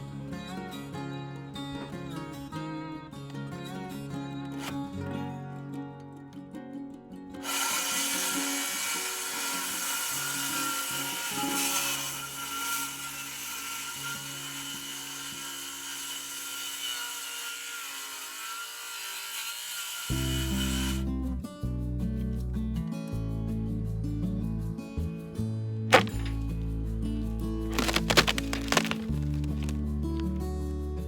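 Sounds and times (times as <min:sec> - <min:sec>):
power saw cutting wood: 0:07.4 - 0:21.0, 0:25.9 - 0:26.4, 0:27.7 - 0:29.8.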